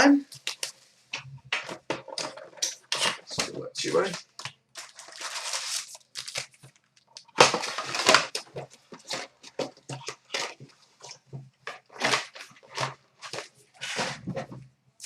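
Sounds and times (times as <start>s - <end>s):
packaging tearing and crinkling: 4.0s - 10.6s, 11.6s - 14.4s.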